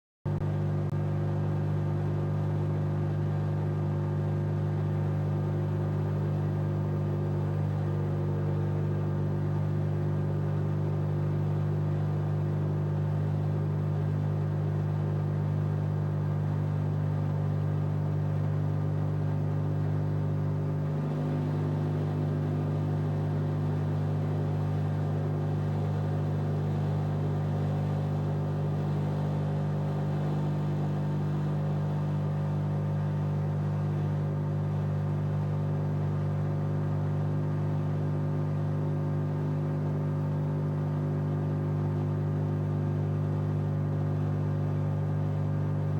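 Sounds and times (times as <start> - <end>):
washing machine humming: 0.3 - 45.9.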